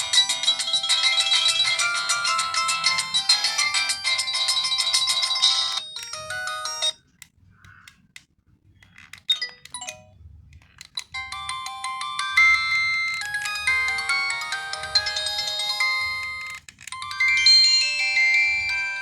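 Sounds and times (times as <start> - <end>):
phone ringtone melody: 0.0 - 7.0, 11.0 - 19.0.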